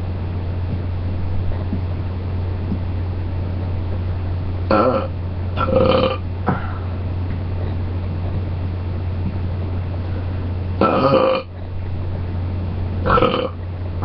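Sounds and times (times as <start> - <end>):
steady low hum: 0.0 - 14.0
person burping: 4.7 - 6.9, 10.8 - 11.5, 13.1 - 13.6.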